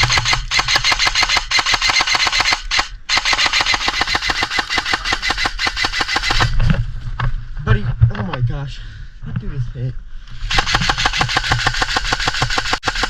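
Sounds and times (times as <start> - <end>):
airsoft gun firing full auto: 0.0 - 6.6, 10.5 - 13.0.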